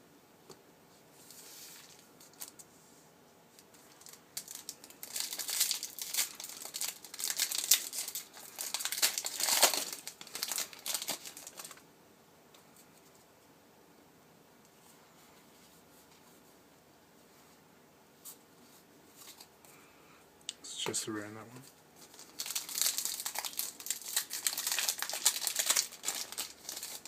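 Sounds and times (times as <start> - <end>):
wrapper crinkling and tearing: 1.3 - 2.6, 3.7 - 11.8, 22.0 - 27.0.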